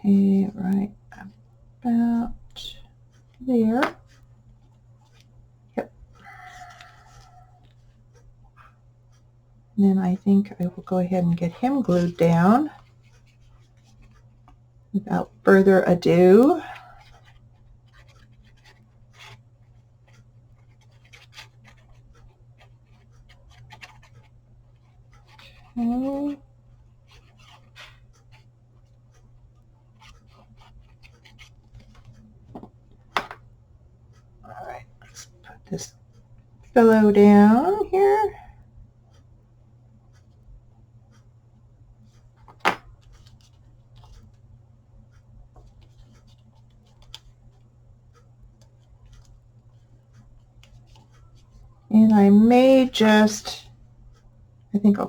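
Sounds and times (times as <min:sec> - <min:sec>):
low steady hum: 0:00.0 - 0:55.0
paper clicks and rustles: 0:45.6 - 0:51.7.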